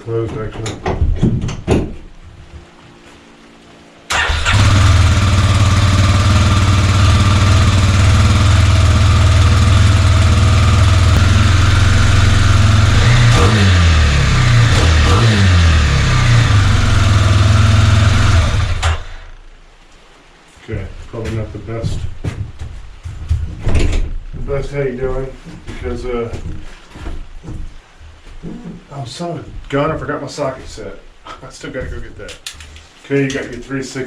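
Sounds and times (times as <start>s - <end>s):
motorcycle engine idling and revving: 4.1s - 19.4s.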